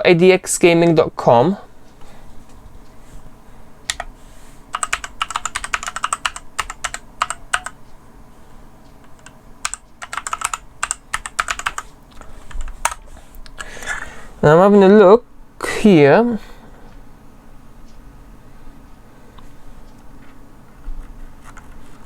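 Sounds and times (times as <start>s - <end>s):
mechanical keyboard typing: 3.9s - 4.1s, 4.7s - 7.8s, 9.0s - 13.7s.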